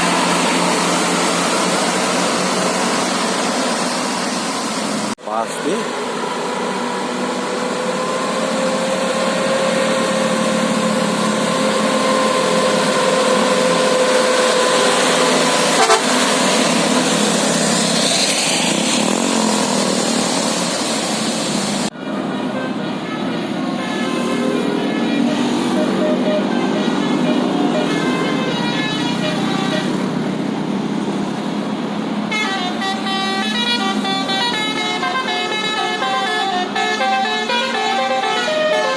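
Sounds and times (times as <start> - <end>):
road and crowd noise: 0.0 - 38.9
bus musical air horn: 6.5 - 17.3, 21.9 - 30.6, 32.2 - 38.9.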